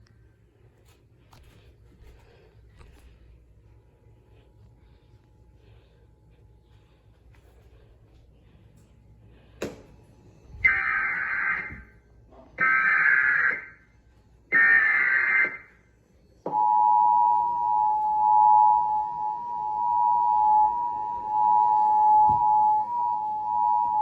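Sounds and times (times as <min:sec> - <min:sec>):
steady two-tone attention signal: 0:16.5 - 0:24.0.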